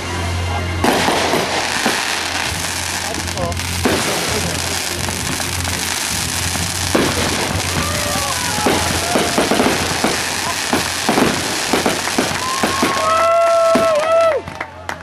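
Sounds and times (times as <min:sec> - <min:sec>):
steady rushing noise: 0:00.0 - 0:14.8
fireworks bangs and crackles: 0:00.0 - 0:15.0.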